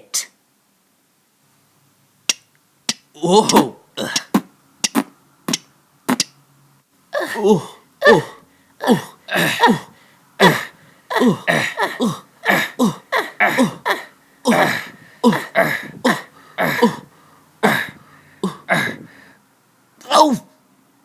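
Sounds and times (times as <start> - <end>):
person making wordless vocal cries: 3.2 - 4.5, 7.2 - 19.1.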